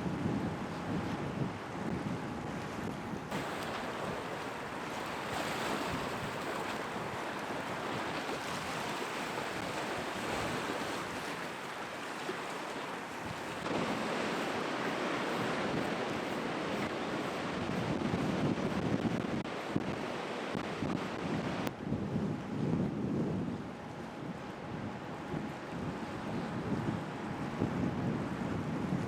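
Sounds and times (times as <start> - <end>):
wind buffeting microphone: 0.0 - 29.0
storm waves breaking: 2.4 - 21.7.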